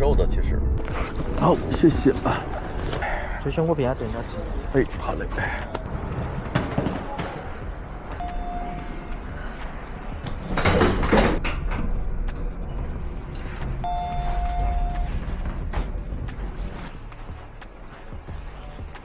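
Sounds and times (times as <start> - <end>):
electronic warning beep: 8.2 - 9.1, 13.8 - 15.2.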